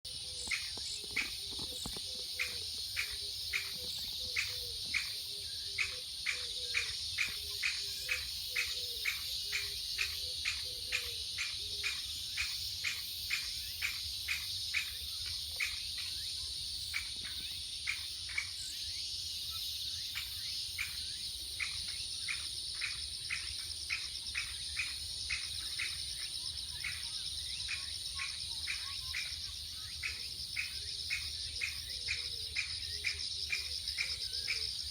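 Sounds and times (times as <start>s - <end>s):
crickets trilling: 0.1s - 34.9s.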